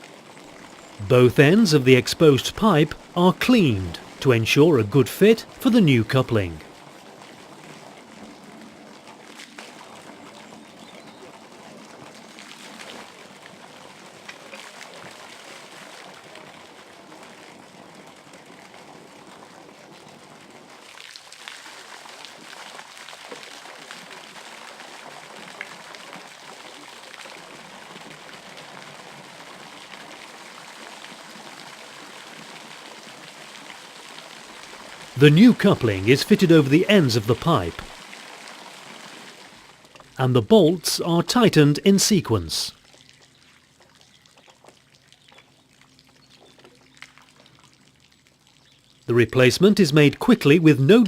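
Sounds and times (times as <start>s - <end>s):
water trickling: 42.7s - 49.1s.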